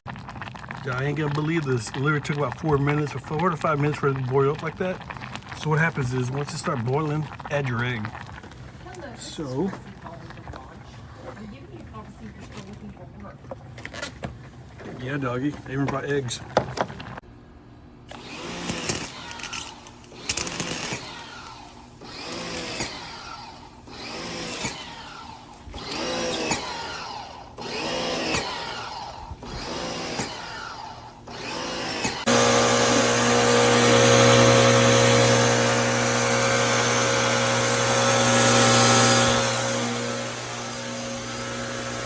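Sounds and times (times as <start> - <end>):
electric pressure washer spraying: 18.1 - 42.0.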